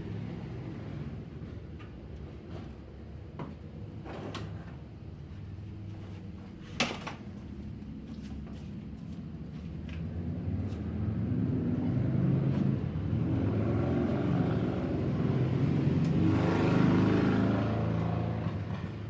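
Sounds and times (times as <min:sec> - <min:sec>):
vehicle engine passing by: 0:10.1 - 0:19.0.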